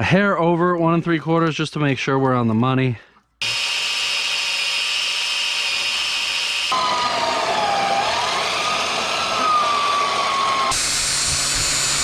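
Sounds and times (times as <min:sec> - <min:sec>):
electric drill boring through steel: 0:03.4 - 0:12.0.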